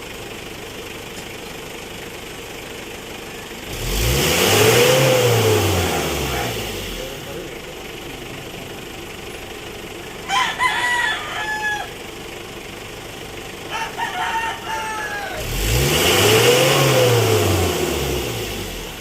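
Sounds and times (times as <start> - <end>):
diesel engine idling and revving: 0.0 - 19.0
rooster crowing: 10.2 - 12.0, 13.7 - 15.6.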